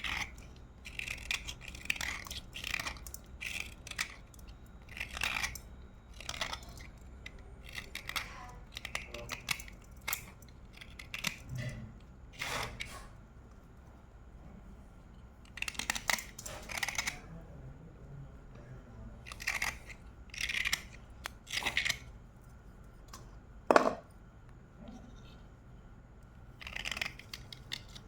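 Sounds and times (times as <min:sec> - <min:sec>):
slate pencils being chewed: 0:00.0 - 0:12.9, 0:15.1 - 0:17.4, 0:19.2 - 0:23.3, 0:26.1 - 0:28.0.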